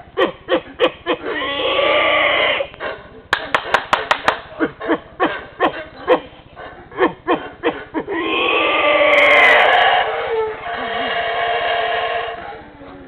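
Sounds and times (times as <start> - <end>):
monkeys barking: 0.0 - 3.2, 4.1 - 12.8
monkeys howling chorus: 4.6 - 12.8.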